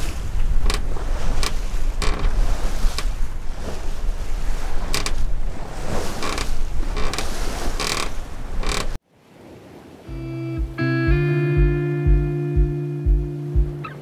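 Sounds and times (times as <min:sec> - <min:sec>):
sharp creaks: 0:00.0 - 0:09.0
rushing water: 0:00.0 - 0:14.0
wind buffeting microphone: 0:00.0 - 0:14.0.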